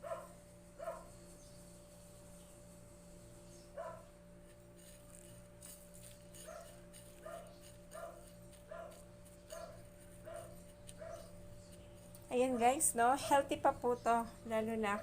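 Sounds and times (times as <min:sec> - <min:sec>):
dog barking faintly: 0:00.0 - 0:01.2, 0:03.7 - 0:04.1, 0:06.3 - 0:11.4
steady low hum: 0:00.0 - 0:15.0.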